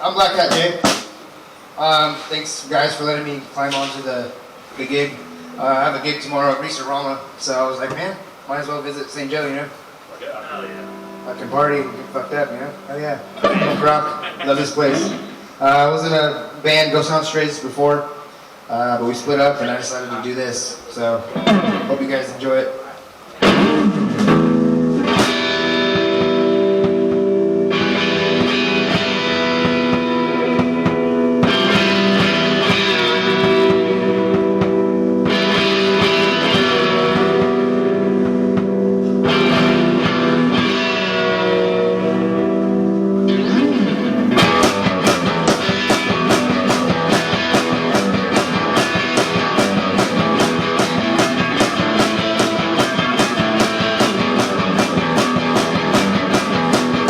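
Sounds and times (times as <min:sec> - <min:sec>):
electric guitar rock music: 0:05.0 - 0:06.4, 0:10.3 - 0:15.6, 0:23.4 - 0:57.0.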